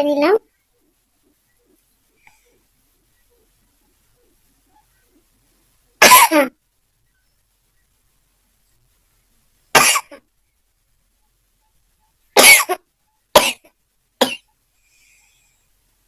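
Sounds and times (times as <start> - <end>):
woman coughing: 6.0 - 6.5, 9.8 - 10.2, 12.4 - 12.8, 13.4 - 13.6, 14.2 - 14.4.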